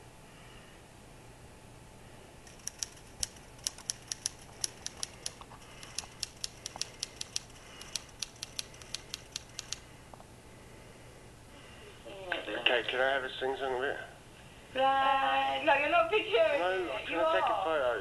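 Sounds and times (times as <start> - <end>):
sharp light clicks: 2.4 - 9.9.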